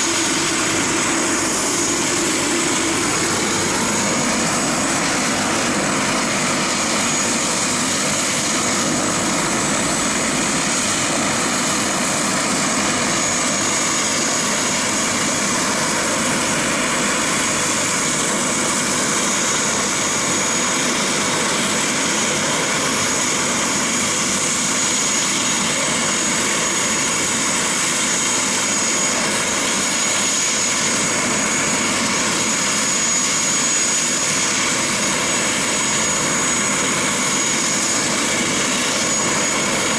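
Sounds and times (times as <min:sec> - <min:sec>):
high-pitched whine: 0:00.0 - 0:27.2
turbine engine rushing: 0:00.0 - 0:39.9.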